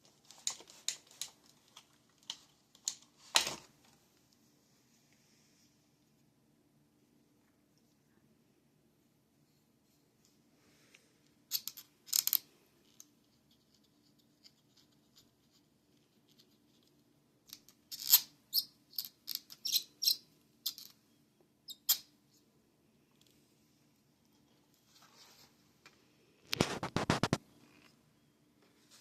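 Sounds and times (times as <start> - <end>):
clicks taps and scrapes of handling: 25.8 - 27.5.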